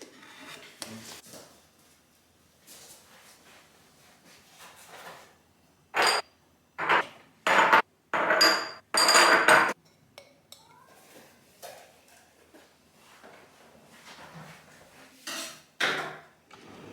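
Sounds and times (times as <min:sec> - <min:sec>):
items clattering and scraping: 0:06.0 - 0:06.2, 0:06.8 - 0:09.8.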